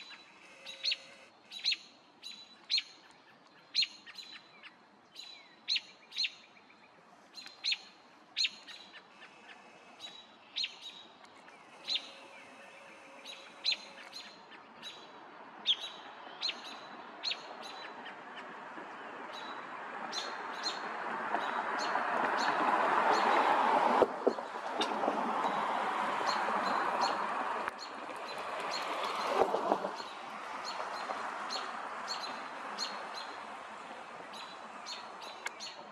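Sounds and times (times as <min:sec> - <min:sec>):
bird chip calls: 0:00.0 - 0:04.4, 0:07.4 - 0:15.0.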